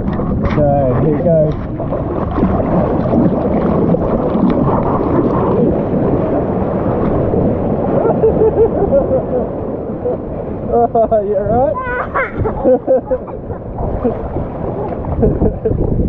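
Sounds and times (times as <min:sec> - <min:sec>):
surf waves breaking: 0:00.0 - 0:16.0
wind rumbling on microphone: 0:00.0 - 0:16.0.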